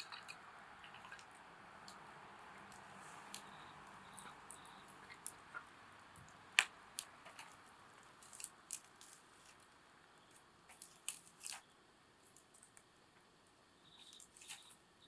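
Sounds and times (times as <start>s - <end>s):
campfire crackling: 0.0s - 15.0s.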